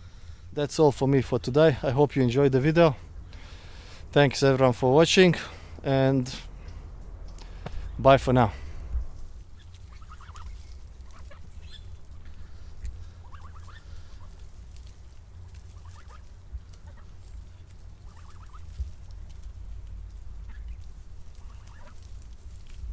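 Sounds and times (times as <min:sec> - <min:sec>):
steady low rumble: 0:00.0 - 0:22.9
bird clucking call: 0:09.5 - 0:14.5, 0:15.5 - 0:18.8, 0:20.4 - 0:22.1.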